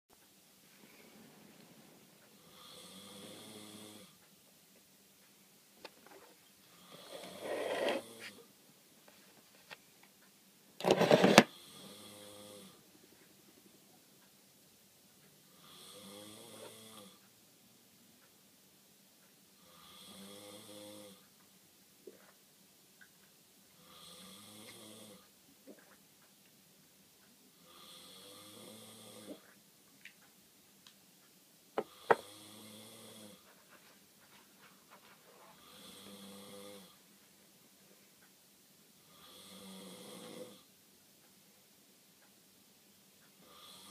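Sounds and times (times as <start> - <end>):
man snoring: 2.4 - 4.2, 6.8 - 8.4, 10.8 - 12.8, 15.5 - 17.2, 19.6 - 21.2, 23.8 - 25.2, 27.6 - 29.4, 31.8 - 33.4, 35.6 - 37.0, 39.1 - 40.7, 43.4 - 43.9
person snoring and snorting: 6.8 - 8.4, 15.6 - 17.2.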